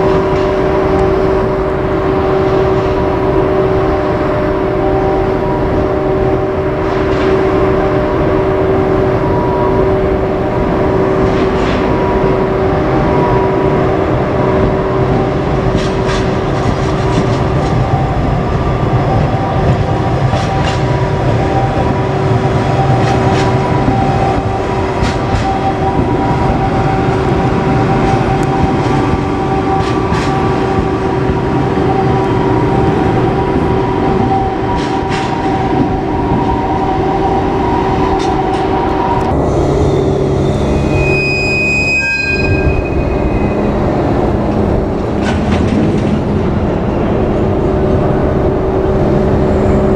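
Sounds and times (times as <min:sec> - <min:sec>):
freight train passing: 0:00.0 - 0:49.9
wheels clacking on rail joints: 0:11.0 - 0:39.4, 0:44.0 - 0:47.4.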